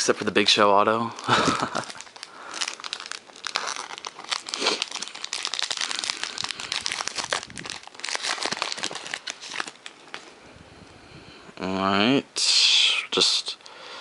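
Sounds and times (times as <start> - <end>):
wrapper crinkling: 0.0 - 10.3.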